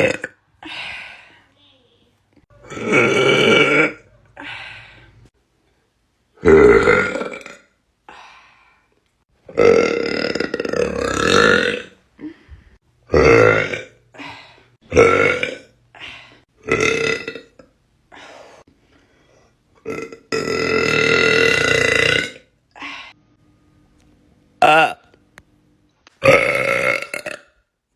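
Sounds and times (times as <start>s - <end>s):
person burping: 0.0s - 0.4s, 2.6s - 4.1s, 6.4s - 7.7s, 9.5s - 12.0s, 13.1s - 14.0s, 14.9s - 15.8s, 16.6s - 17.8s, 19.8s - 22.9s, 24.6s - 25.1s, 26.2s - 27.6s.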